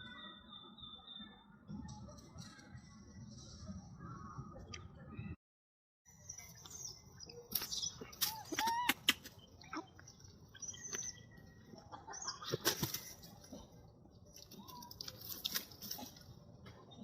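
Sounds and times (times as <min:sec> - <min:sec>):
animal chirps and squeaks: 0:06.4 - 0:11.4.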